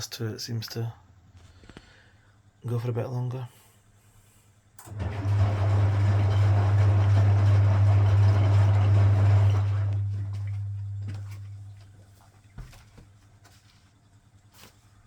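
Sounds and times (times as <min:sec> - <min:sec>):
washing machine low hum: 0:04.8 - 0:15.0.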